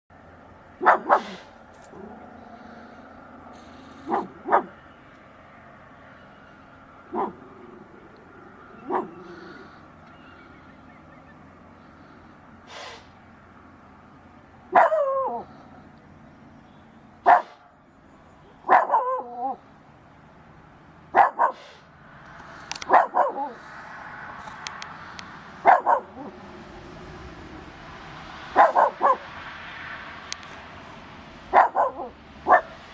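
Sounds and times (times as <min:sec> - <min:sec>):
dog barking: 0:00.8 - 0:01.5, 0:04.0 - 0:04.8, 0:07.1 - 0:07.4, 0:08.8 - 0:09.2, 0:14.7 - 0:15.5, 0:17.2 - 0:17.7, 0:18.6 - 0:19.6, 0:21.1 - 0:21.8, 0:22.9 - 0:23.6, 0:25.6 - 0:26.3, 0:28.6 - 0:29.3, 0:31.5 - 0:32.8
deer snorting: 0:01.0 - 0:04.5, 0:08.8 - 0:09.9, 0:12.7 - 0:13.2.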